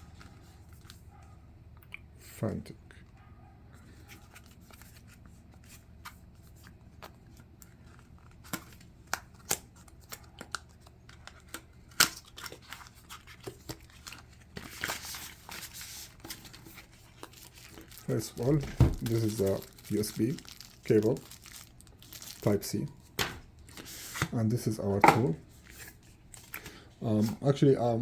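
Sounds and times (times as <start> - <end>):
paper or plastic rustling: 10.7 - 24.4.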